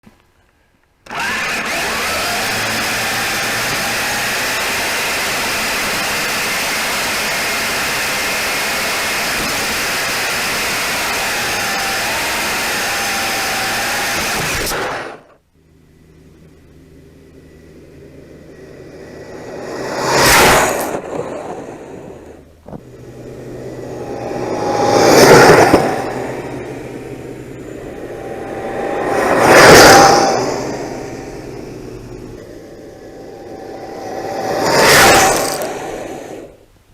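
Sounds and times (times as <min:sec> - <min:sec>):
toy car motor and gears whining: 0:01.0 - 0:36.6
low hum: 0:14.7 - 0:36.9
steady rushing noise: 0:16.0 - 0:36.9.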